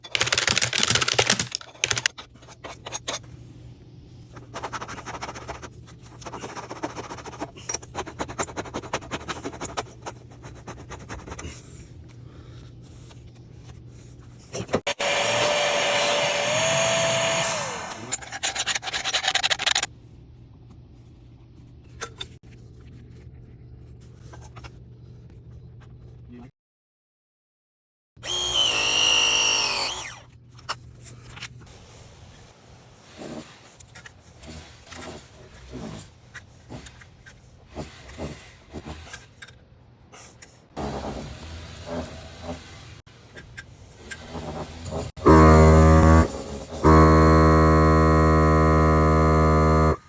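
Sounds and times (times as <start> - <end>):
power tool spinning: 0.0 - 2.1, 14.9 - 19.9, 28.2 - 30.2.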